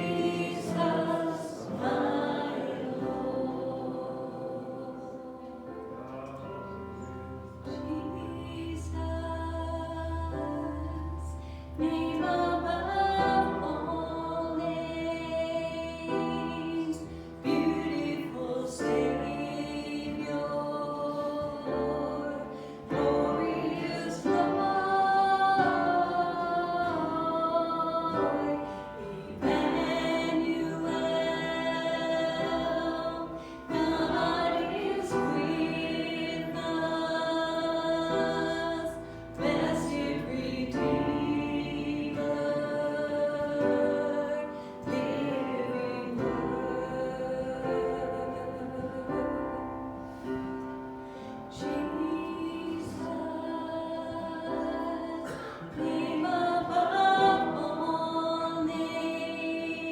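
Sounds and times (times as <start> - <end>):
choir singing a hymn: 0.0 - 59.9.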